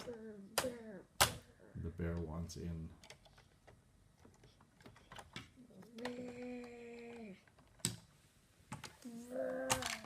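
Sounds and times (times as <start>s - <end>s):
plastic lego pieces clicking: 8.8s - 10.0s.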